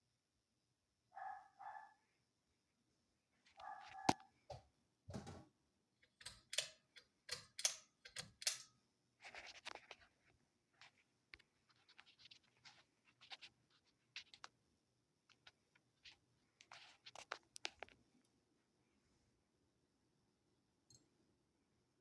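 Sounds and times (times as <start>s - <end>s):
light clicks and scratching: 6.2s - 14.6s, 15.2s - 18.4s.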